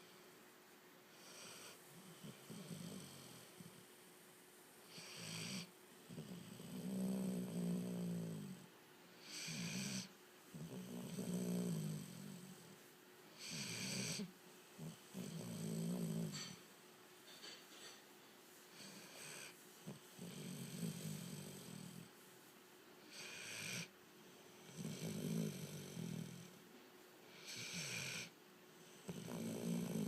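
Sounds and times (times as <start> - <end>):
dog snoring: 1.1 - 3.8, 4.9 - 12.8, 13.4 - 16.7, 18.7 - 22.1, 23.1 - 23.9, 24.5 - 26.6, 27.3 - 30.0.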